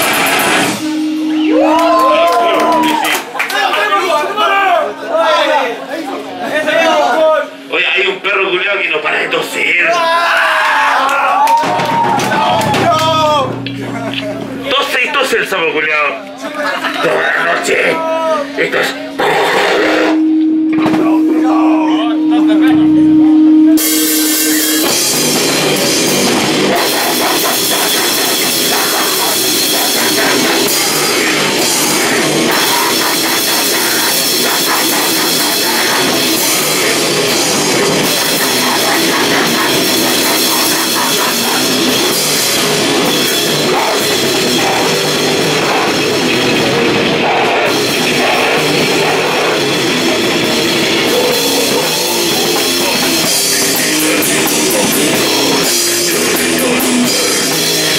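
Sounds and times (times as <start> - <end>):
fast drum kit: 0.0 - 3.3, 11.5 - 14.6, 23.8 - 57.9
distorted guitar: 0.0 - 3.4, 11.4 - 57.9
grindcore band playing: 0.0 - 57.9.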